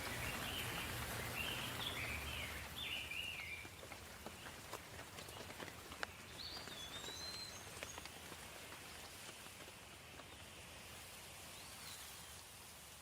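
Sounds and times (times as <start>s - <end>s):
steady rain: 0.0s - 13.0s.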